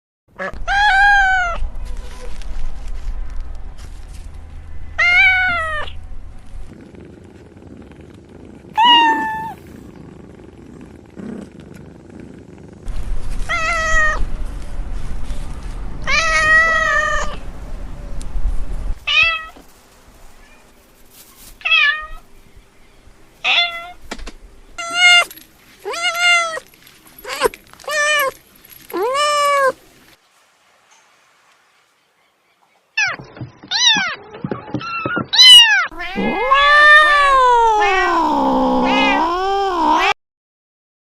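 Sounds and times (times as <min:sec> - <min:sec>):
cat meowing: 0:00.4 - 0:01.6, 0:05.0 - 0:06.0, 0:08.8 - 0:09.7, 0:13.5 - 0:14.2, 0:16.0 - 0:17.4, 0:23.4 - 0:24.0, 0:24.8 - 0:25.3, 0:25.9 - 0:26.6, 0:28.9 - 0:29.8, 0:33.0 - 0:40.2
low rumble: 0:01.3 - 0:08.8, 0:12.4 - 0:19.1.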